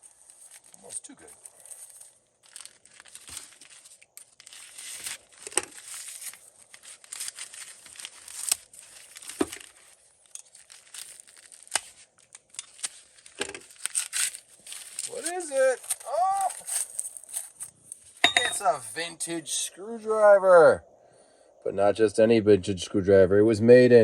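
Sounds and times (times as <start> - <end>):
paper wrapping tearing and crumpling: 0.0 - 18.2.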